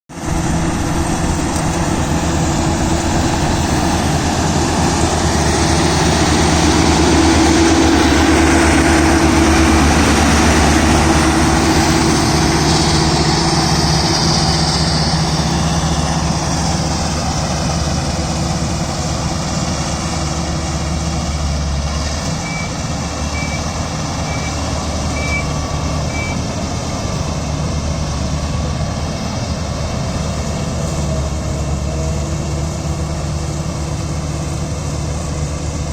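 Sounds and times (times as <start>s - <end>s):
combine harvester running: 0.1s - 35.9s
short high beeps: 22.4s - 22.7s, 24.3s - 25.5s, 26.1s - 26.4s.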